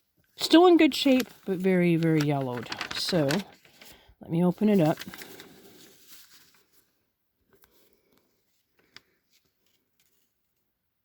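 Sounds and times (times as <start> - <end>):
paper rustling: 0.4 - 7.0, 8.5 - 10.6
light ticks of paper: 0.9 - 4.0, 4.7 - 6.9, 7.5 - 10.7.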